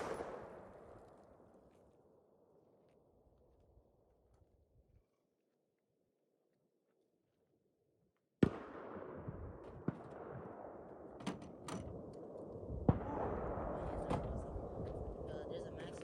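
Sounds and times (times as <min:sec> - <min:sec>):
rifle shots: 0:00.0 - 0:01.2.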